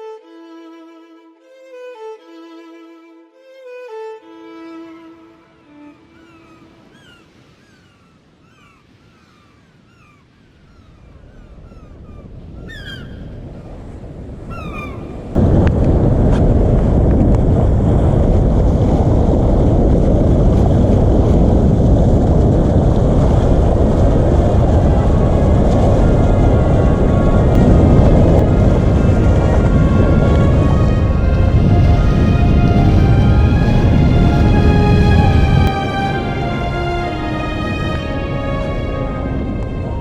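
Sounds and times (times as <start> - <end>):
rushing sea water: 4.2 - 40.0
loud wind: 4.9 - 40.0
birds chirping: 5.7 - 13.8, 14.5 - 15.4
faint rushing noise: 20.9 - 40.0.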